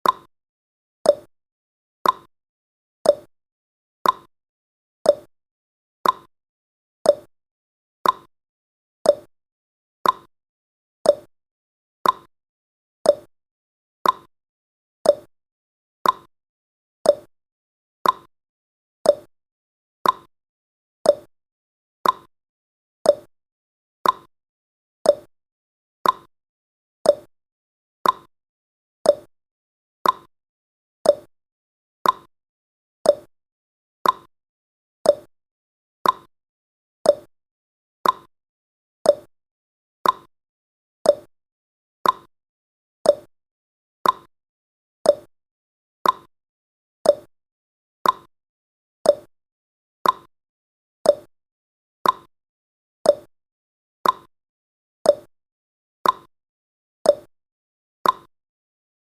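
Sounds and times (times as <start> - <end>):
clock tick-tock: 0.0 - 0.3, 1.1 - 1.3, 2.0 - 2.3, 3.1 - 3.3, 4.0 - 4.3, 5.1 - 5.3, 6.0 - 6.3, 7.1 - 7.3, 8.0 - 8.3, 9.1 - 9.3, 10.0 - 10.3, 11.1 - 11.3, 12.0 - 12.3, 13.1 - 13.3, 14.0 - 14.3, 15.0 - 15.3, 16.0 - 16.3, 17.1 - 17.3, 18.0 - 18.3, 19.0 - 19.3, 20.0 - 20.3, 21.0 - 21.3, 22.0 - 22.3, 23.0 - 23.3, 24.0 - 24.3, 25.0 - 25.3, 26.0 - 26.3, 27.0 - 27.3, 28.0 - 28.3, 29.0 - 29.3, 30.0 - 30.3, 31.0 - 31.3, 32.0 - 32.3, 33.0 - 33.3, 34.0 - 34.3, 35.0 - 35.3, 36.0 - 36.3, 37.0 - 37.3, 38.0 - 38.3, 39.0 - 39.3, 40.0 - 40.3, 41.0 - 41.3, 42.0 - 42.3, 43.0 - 43.3, 44.0 - 44.3, 45.0 - 45.3, 46.0 - 46.3, 47.0 - 47.3, 48.0 - 48.3, 49.1 - 49.3, 50.0 - 50.3, 51.1 - 51.3, 52.0 - 52.3, 53.1 - 53.3, 54.0 - 54.3, 55.1 - 55.3, 56.0 - 56.3, 57.1 - 57.3, 58.0 - 58.3.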